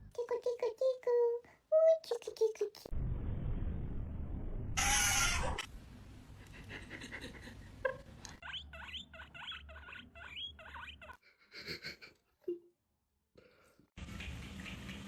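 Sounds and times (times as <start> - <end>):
hamster squeaking: 4.8 - 5.7, 8.4 - 11.2.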